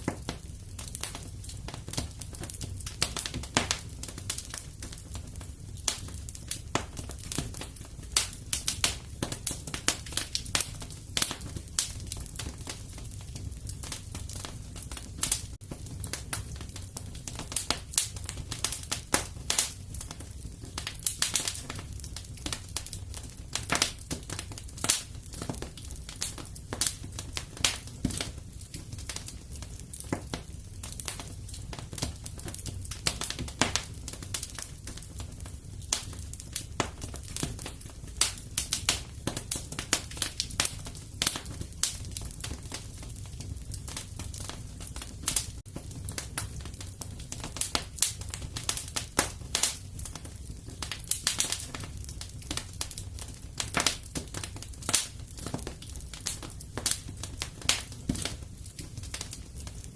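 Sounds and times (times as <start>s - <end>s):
fire crackling: 0.0s - 59.9s.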